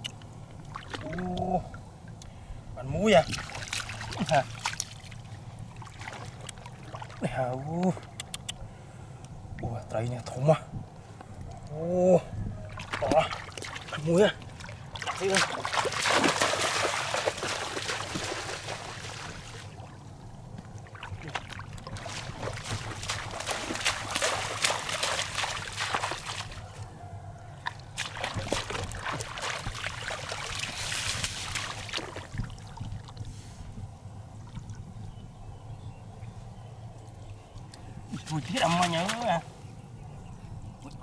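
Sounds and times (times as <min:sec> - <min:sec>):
water splashing and sloshing: 0:00.0 - 0:02.3, 0:03.1 - 0:08.2, 0:12.6 - 0:35.0, 0:37.0 - 0:39.7, 0:40.7 - 0:41.0.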